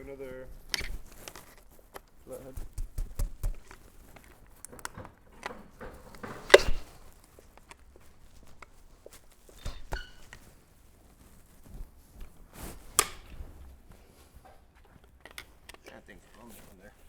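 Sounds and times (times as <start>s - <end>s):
hand tools clicking on metal: 4.6s - 7.0s, 9.5s - 10.4s
sharp knock: 6.2s - 7.0s
short metallic ring: 9.6s - 10.3s.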